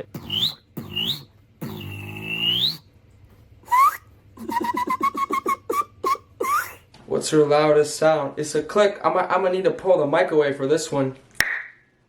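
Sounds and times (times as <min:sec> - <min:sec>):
fast tonal mouth clicks: 0:00.0 - 0:02.8, 0:03.7 - 0:06.8
beatbox whistle-like tones: 0:00.0 - 0:02.9, 0:03.6 - 0:06.9
rising chirp: 0:00.2 - 0:02.8.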